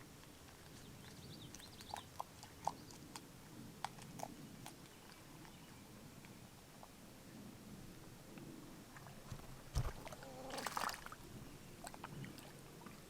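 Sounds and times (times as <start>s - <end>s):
beaver chewing crunches: 0.0s - 5.7s.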